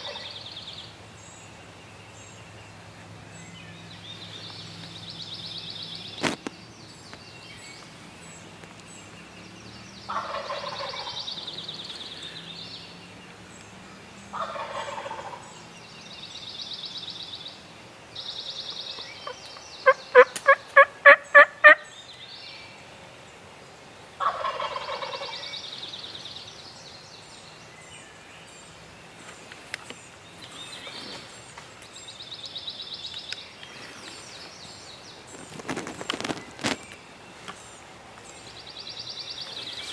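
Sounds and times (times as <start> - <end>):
turkey gobbling: 0.0 - 0.3, 10.1 - 11.2, 14.3 - 15.4, 19.2 - 21.9, 24.2 - 25.4
songbirds trilling: 0.0 - 39.9
sharp turkey yelps: 19.2 - 21.9, 24.2 - 25.3.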